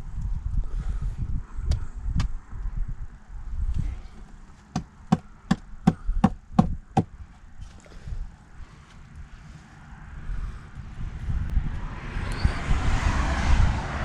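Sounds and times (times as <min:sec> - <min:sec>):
sharp knocks: 0:04.7 - 0:07.1.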